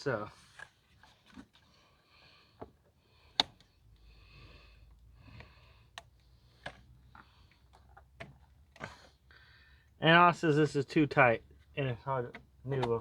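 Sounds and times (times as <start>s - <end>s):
faint handling noise: 0.3s - 3.7s.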